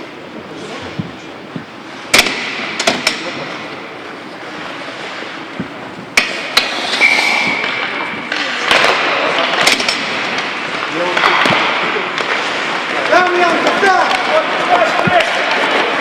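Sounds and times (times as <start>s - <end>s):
puck and sticks hitting boards: 0.8s - 3.9s, 5.5s - 16.0s
skates hissing on ice: 6.6s - 7.7s.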